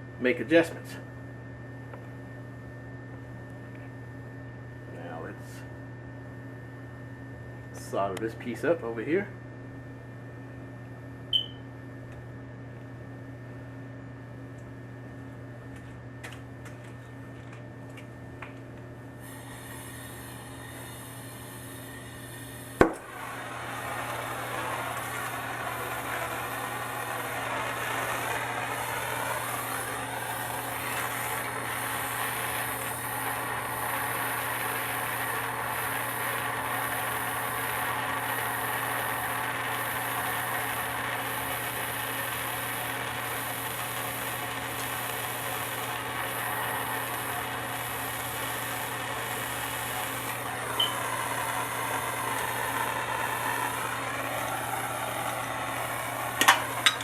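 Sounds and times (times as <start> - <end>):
gas torch flame hissing: 19.2 - 57.0.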